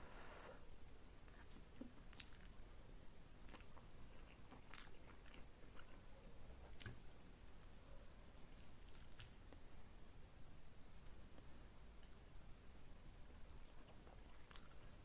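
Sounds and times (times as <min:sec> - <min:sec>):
chewing and wet mouth sounds: 0:01.2 - 0:02.8, 0:03.4 - 0:09.6, 0:13.1 - 0:15.0.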